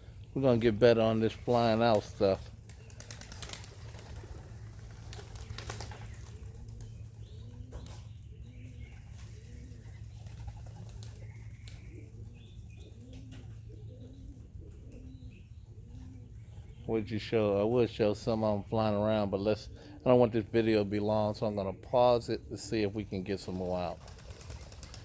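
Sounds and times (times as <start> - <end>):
pigeons cooing: 0.0 - 25.0
wings flapping: 1.2 - 7.2, 9.1 - 12.0, 23.3 - 25.0.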